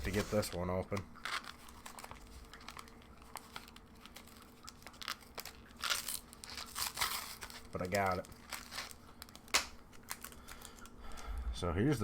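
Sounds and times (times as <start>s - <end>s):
foil wrapper crinkling: 0.0s - 11.3s.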